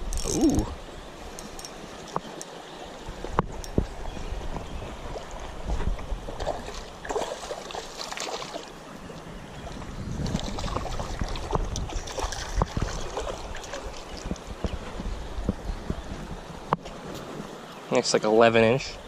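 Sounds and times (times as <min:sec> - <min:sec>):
wind buffeting microphone: 0:00.0 - 0:02.3, 0:02.9 - 0:07.5, 0:08.9 - 0:17.6
shallow river flowing: 0:00.0 - 0:19.0
fish splashing in water: 0:06.4 - 0:08.7.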